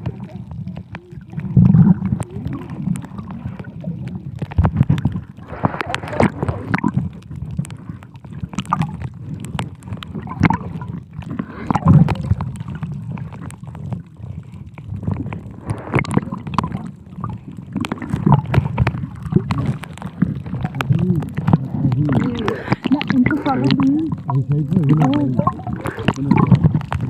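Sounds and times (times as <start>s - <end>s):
muffled underwater water sloshing: 0.0s - 27.0s.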